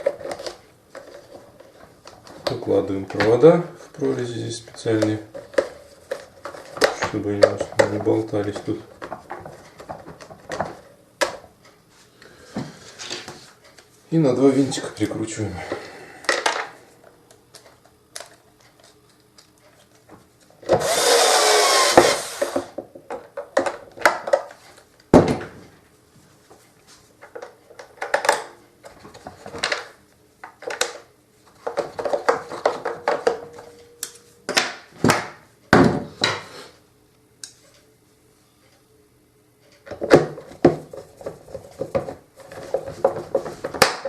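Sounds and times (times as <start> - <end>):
electric screwdriver whirring: 20.7 - 22.7.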